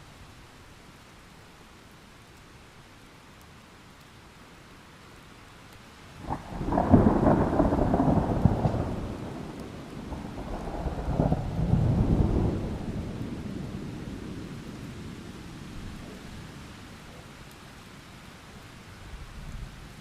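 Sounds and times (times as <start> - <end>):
steady rain: 0.0 - 20.0
thunder crack and rumble: 6.2 - 16.2.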